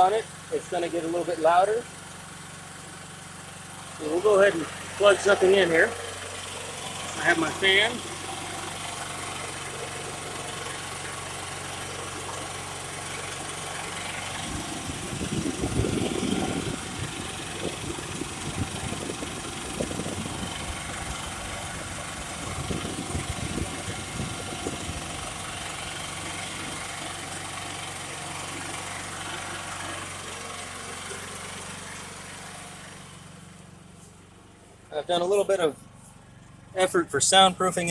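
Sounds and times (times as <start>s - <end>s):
generator running: 0.0s - 37.9s
low rumbling noise: 14.1s - 26.8s.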